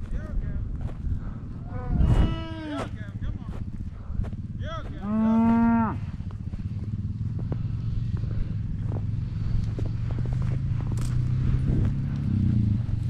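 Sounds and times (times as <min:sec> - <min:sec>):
low engine rumble: 0:00.0 - 0:13.0
cow mooing: 0:01.6 - 0:03.0, 0:04.9 - 0:06.1.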